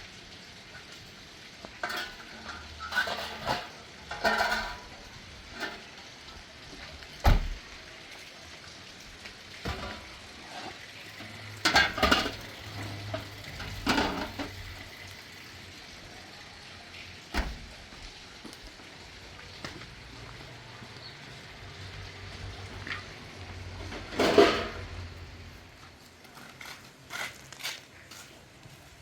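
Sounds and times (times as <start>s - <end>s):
utensil scraping in a pan: 0.8s - 6.1s, 9.6s - 15.4s, 26.2s - 28.9s.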